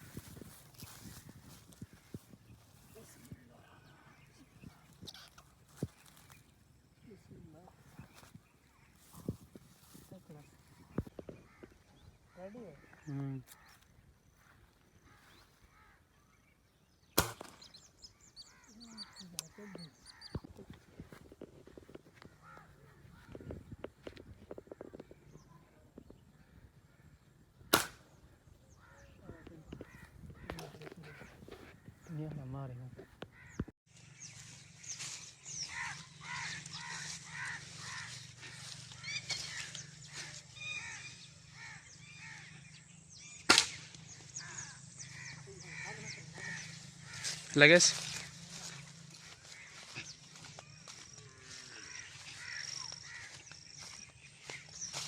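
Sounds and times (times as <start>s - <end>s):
crow-like caws: 11.2s - 16.1s, 22.2s - 23.6s, 33.3s - 33.7s, 35.7s - 42.7s, 44.4s - 47.5s, 48.1s - 53.8s
high falling bird chirps: 16.3s - 20.5s, 33.5s - 55.0s
air rifle shot: 17.2s - 17.7s, 27.7s - 28.2s, 43.5s - 44.0s.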